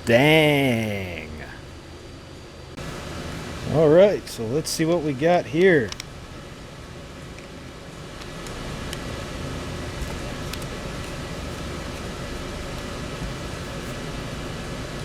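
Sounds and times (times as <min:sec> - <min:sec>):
faint light clicks: 0:05.9 - 0:06.1.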